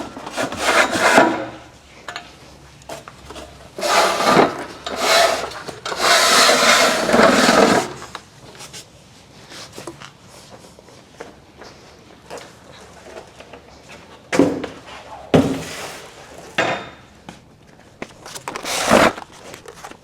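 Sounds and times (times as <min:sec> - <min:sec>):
metal bracket scraping along column: 0:03.8 - 0:08.0.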